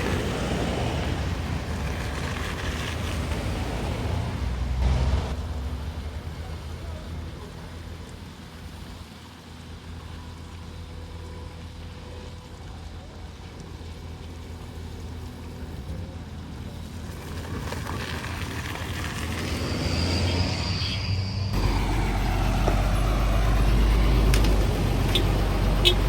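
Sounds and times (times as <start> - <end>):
vehicle engine rumbling: 0.0 - 26.0
thin high whine: 18.0 - 26.0.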